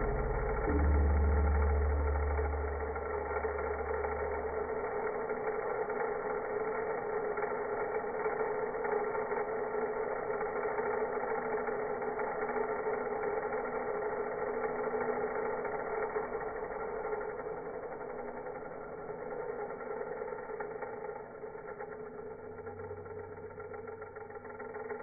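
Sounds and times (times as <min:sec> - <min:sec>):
deep low drone: 0:00.0 - 0:07.4, 0:15.0 - 0:25.0.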